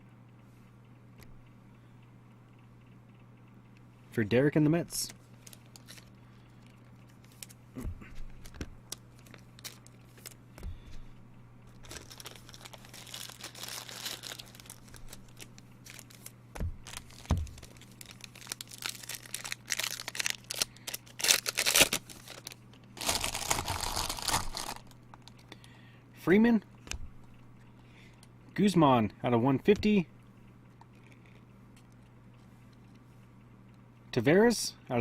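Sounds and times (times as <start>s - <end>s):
cards shuffling: 5.0s - 6.1s, 7.1s - 11.1s, 11.7s - 25.4s
plastic wrapping crinkling and tearing: 5.4s - 6.2s, 6.8s - 7.6s, 8.2s - 10.4s, 11.7s - 25.4s.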